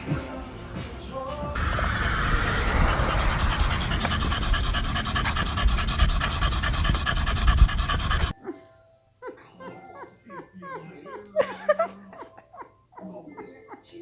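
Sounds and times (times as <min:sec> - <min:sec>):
dog panting: 0:01.6 - 0:08.4.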